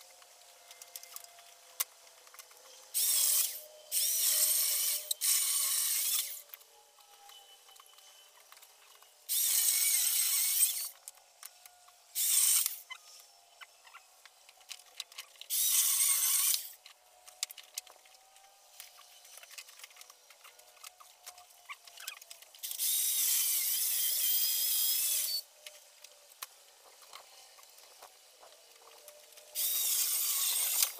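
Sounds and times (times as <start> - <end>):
power saw cutting wood: 0.7 - 30.9
small clicks: 9.9 - 23.3.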